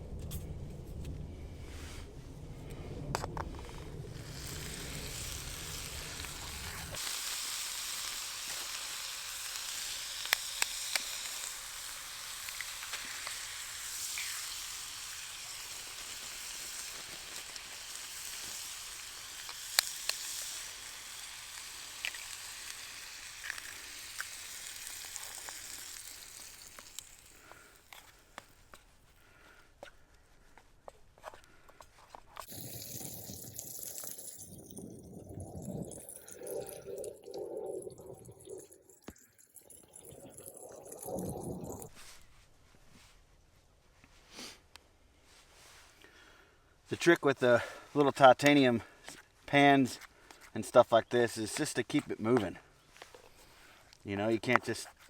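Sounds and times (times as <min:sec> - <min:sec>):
low rumble: 0:00.0 - 0:07.0
food sizzling in a pan: 0:04.1 - 0:27.9, 0:32.4 - 0:34.7.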